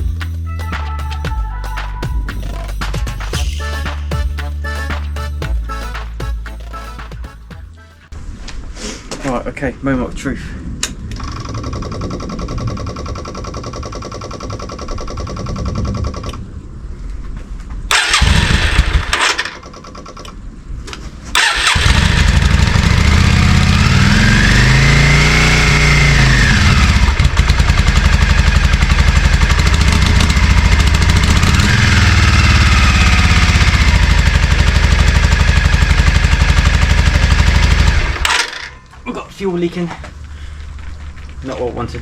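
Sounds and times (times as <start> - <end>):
motorcycle engine cranking: 11.0 - 16.4, 17.9 - 20.4, 21.3 - 39.1
motorcycle engine revving: 17.9 - 20.2, 21.3 - 38.8.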